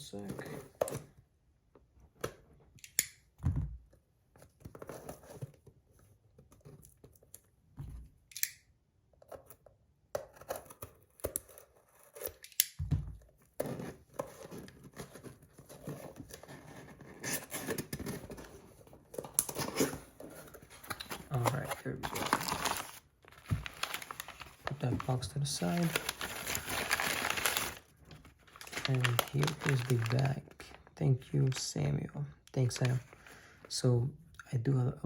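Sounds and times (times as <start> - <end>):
packaging tearing and rustling: 13.6 - 31.7, 32.6 - 33.3.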